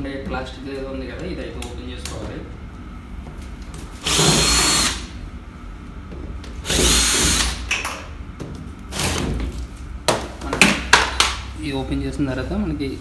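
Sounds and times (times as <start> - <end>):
power drill whirring: 4.0 - 5.2, 6.6 - 7.7.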